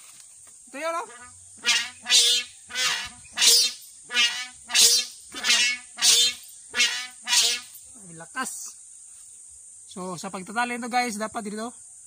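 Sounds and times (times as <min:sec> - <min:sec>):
kite hummer buzzing: 0:01.1 - 0:07.8.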